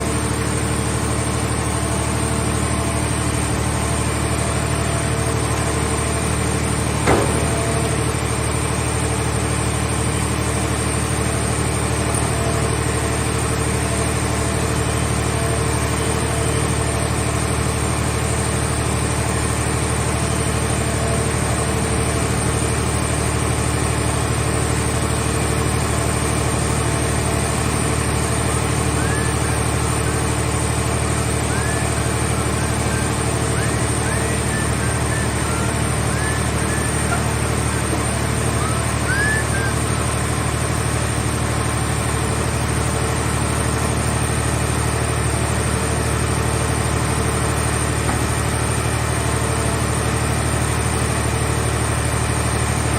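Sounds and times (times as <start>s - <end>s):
hydraulic power unit running: 0.0s - 52.9s
sharp knock: 7.1s - 7.9s.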